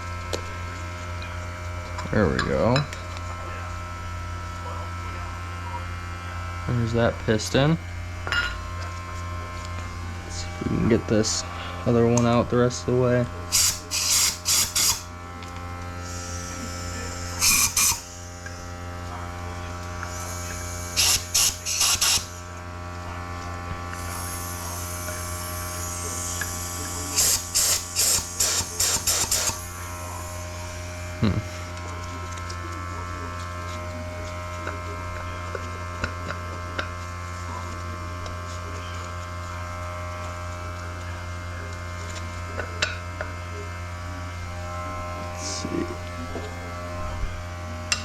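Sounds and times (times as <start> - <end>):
air compressor humming: 0.0 - 48.0
compressed air blasts: 13.5 - 15.1, 17.3 - 18.2, 20.1 - 22.4, 27.1 - 29.7.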